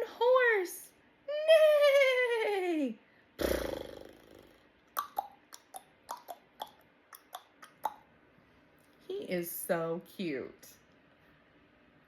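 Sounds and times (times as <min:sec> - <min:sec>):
person snorting like a horse: 0:03.4 - 0:04.6
tongue clicks like hooves: 0:05.0 - 0:08.0.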